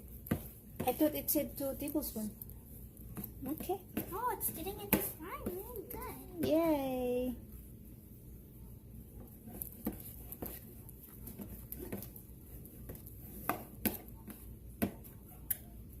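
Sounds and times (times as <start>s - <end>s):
spoon stirring slime: 0.0s - 6.6s, 9.1s - 15.9s.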